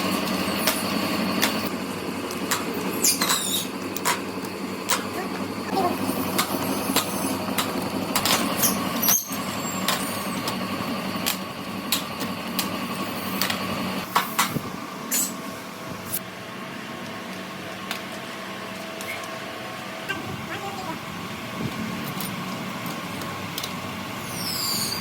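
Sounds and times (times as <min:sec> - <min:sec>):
factory machinery humming: 0:00.0 - 0:18.8
sharp clicks and knocks: 0:02.3 - 0:05.1.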